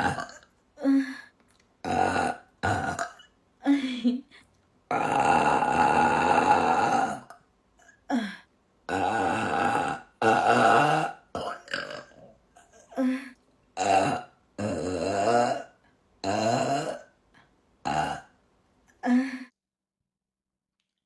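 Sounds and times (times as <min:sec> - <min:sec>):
woman burping: 0:00.0 - 0:00.9, 0:01.8 - 0:04.3, 0:08.9 - 0:17.1, 0:17.8 - 0:18.3.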